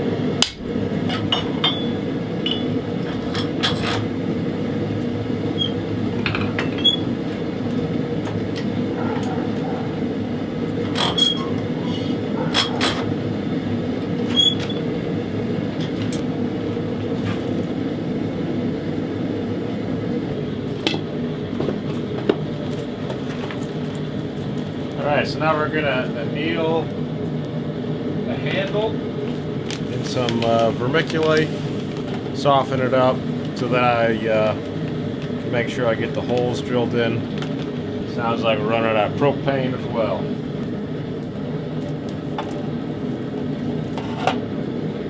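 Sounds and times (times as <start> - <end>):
forge burner rushing: 0.0 - 45.0
hammer striking steel on anvil: 1.2 - 2.7.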